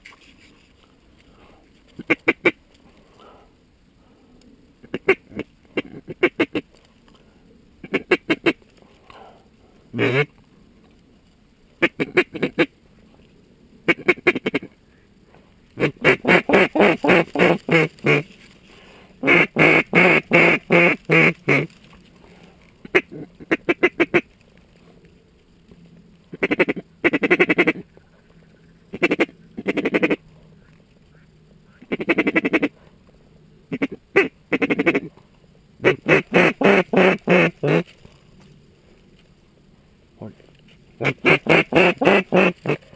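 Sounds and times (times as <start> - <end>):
duck quacking: 2.0 - 2.6, 4.8 - 6.6, 7.8 - 8.6, 9.9 - 10.3, 11.8 - 12.7, 13.9 - 14.7, 15.8 - 18.3, 19.2 - 21.7, 22.8 - 24.3, 26.3 - 27.8, 28.9 - 30.2, 31.1 - 32.7, 33.7 - 35.1, 35.8 - 37.8, 41.0 - 42.9.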